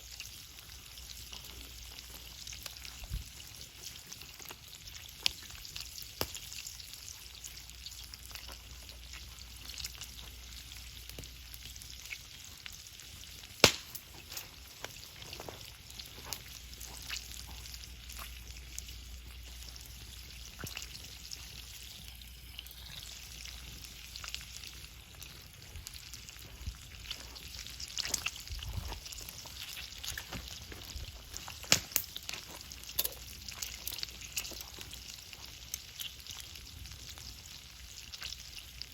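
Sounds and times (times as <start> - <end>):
food sizzling in a pan: 0.0 - 38.9
wood fire crackling: 0.0 - 38.9
sharp pop: 13.6 - 14.0.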